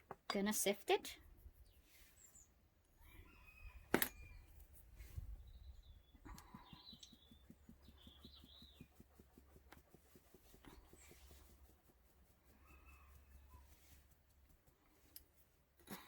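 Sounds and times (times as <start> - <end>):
rooster crowing: 3.0 - 4.4.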